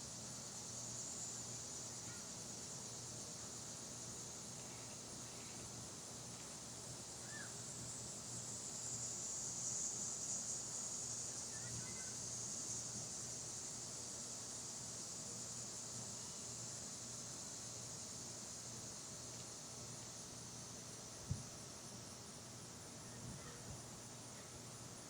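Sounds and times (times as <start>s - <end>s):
insects buzzing chorus: 0.0s - 25.0s
faint bird chirp: 7.2s - 7.5s.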